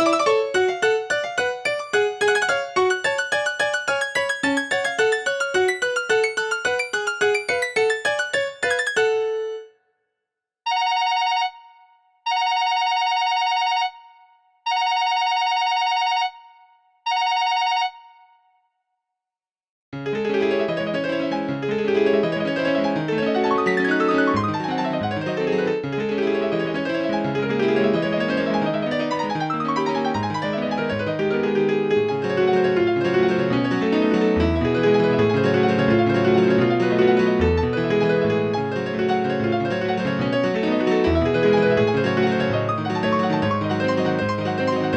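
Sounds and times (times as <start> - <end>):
melodic phone ringtone: 0.0 - 9.7, 23.5 - 24.9.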